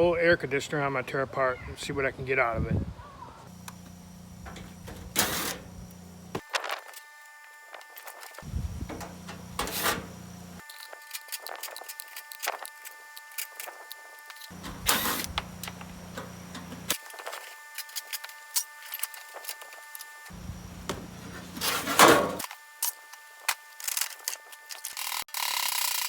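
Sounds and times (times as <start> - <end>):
metal parts clinking and clattering: 7.8 - 20.2.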